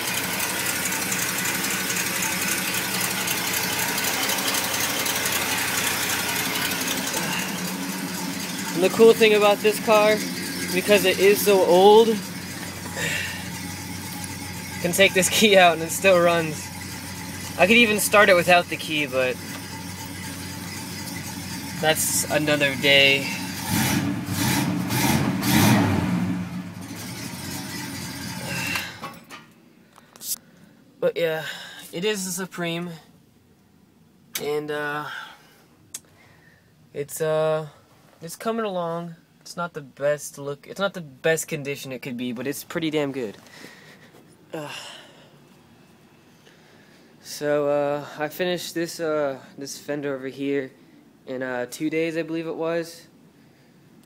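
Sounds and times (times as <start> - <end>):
engine idling with mechanical clatter: 0.0 - 30.7, 43.2 - 48.6
person talking: 8.7 - 12.4, 14.8 - 16.7, 17.6 - 19.4, 21.8 - 23.4.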